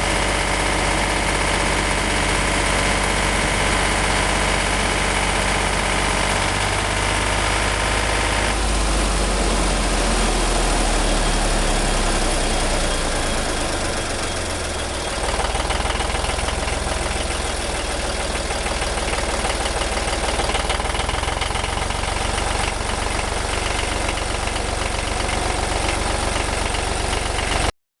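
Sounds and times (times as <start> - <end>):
tractor engine running: 0.0 - 27.7.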